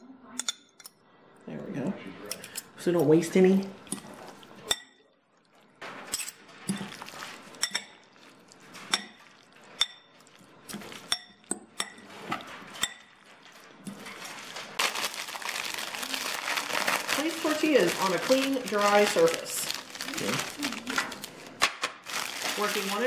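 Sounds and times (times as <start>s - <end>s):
spoon clinking against a dish: 9.8s - 10.1s, 11.0s - 12.0s
rustling: 13.4s - 23.0s.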